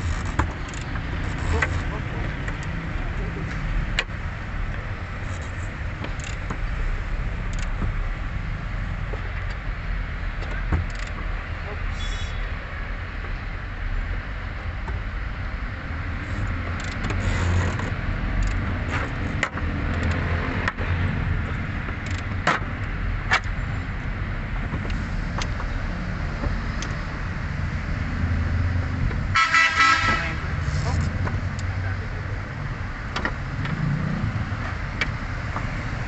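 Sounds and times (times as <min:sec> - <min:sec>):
low rumble of traffic: 0:00.0 - 0:36.0
clicks and knocks of hand work: 0:03.5 - 0:06.7, 0:16.4 - 0:23.7.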